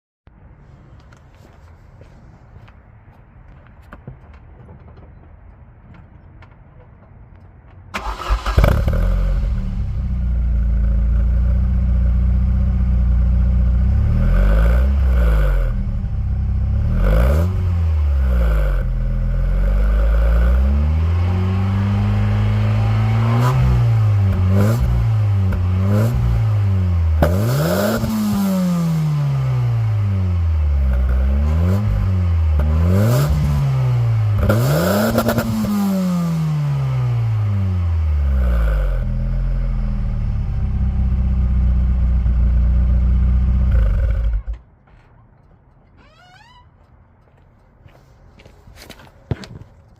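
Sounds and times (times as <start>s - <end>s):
car engine starting and idling: 7.3s - 46.0s
car engine revving: 8.0s - 44.6s.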